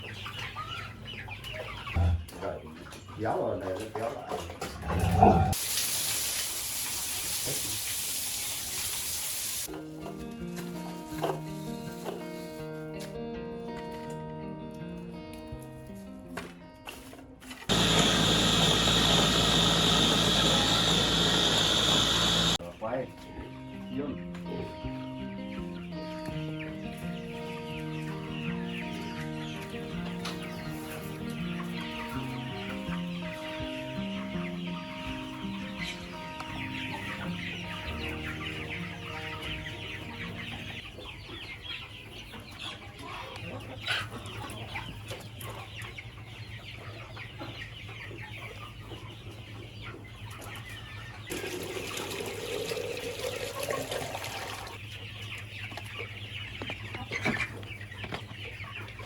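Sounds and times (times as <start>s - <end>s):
chickens clucking and chirping: 0.0s - 5.6s, 17.0s - 59.0s
background music simple melody: 9.7s - 17.7s, 22.6s - 51.1s
noisy whirring rising in pitch: 17.7s - 22.6s.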